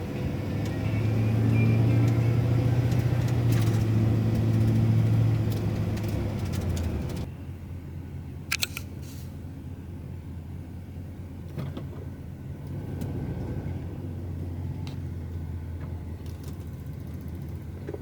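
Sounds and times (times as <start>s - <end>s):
engine and road rumble: 0.0s - 18.0s
sharp clicks: 8.5s - 8.9s.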